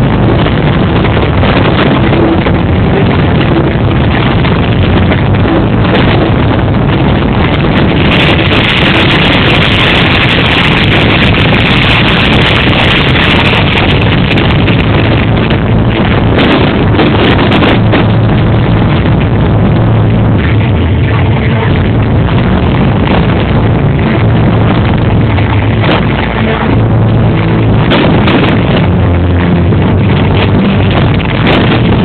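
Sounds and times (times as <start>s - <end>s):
fireworks rumble: 0.0s - 32.0s
fireworks crackling: 7.2s - 32.0s
fireworks sharp pops: 27.8s - 29.0s.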